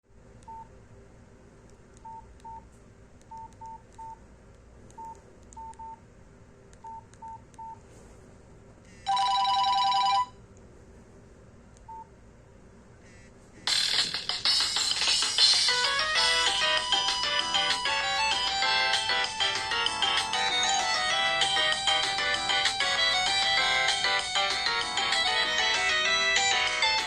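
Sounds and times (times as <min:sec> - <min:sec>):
phone keypad beeps: 0:06.8 - 0:07.8.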